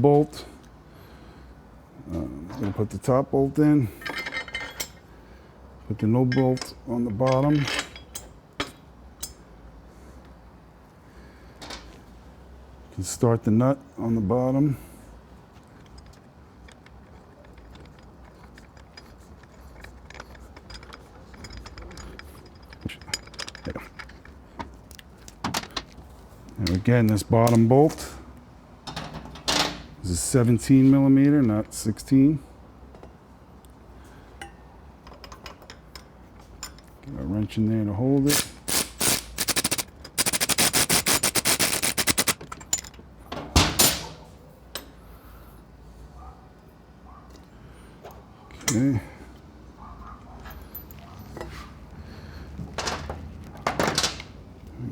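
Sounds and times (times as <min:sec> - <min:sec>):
metal tools clicking: 0:15.8 - 0:24.4, 0:38.3 - 0:43.0
socket ratchet clicking rapidly: 0:38.3 - 0:42.4.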